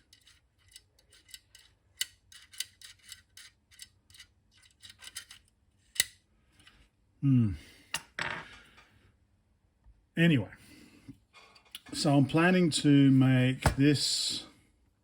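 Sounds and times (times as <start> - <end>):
small metal parts clicking: 0.0 - 6.7
breath: 6.5 - 9.2, 10.6 - 11.2
short voice sound: 7.2 - 7.6.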